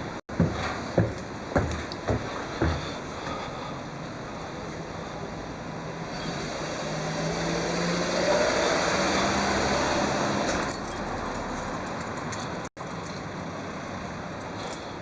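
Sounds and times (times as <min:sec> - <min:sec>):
vehicle passing by: 0:06.0 - 0:10.7.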